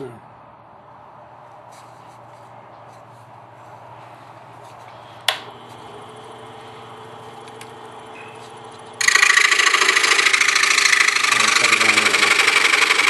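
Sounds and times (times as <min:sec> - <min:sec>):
low steady hum: 0:02.1 - 0:09.0
scroll saw running: 0:05.5 - 0:13.0.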